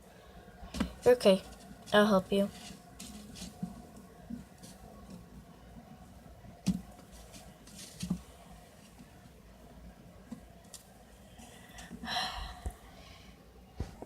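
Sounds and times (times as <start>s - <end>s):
quiet handling noises: 0.7s - 9.5s.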